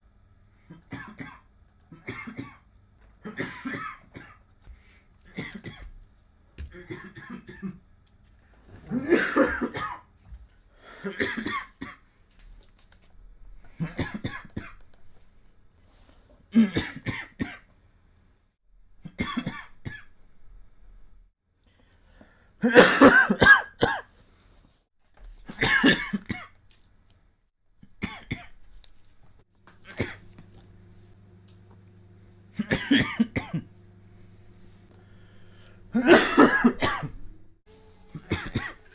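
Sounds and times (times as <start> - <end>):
person coughing: 0.7 - 4.4, 5.3 - 5.9, 6.6 - 7.8, 8.9 - 10.1, 10.9 - 12.0, 13.7 - 14.8, 16.5 - 17.7, 19.0 - 20.1, 22.6 - 24.1, 25.5 - 26.6, 27.9 - 28.6, 29.8 - 30.4, 32.5 - 33.7, 35.3 - 37.3, 38.1 - 38.9.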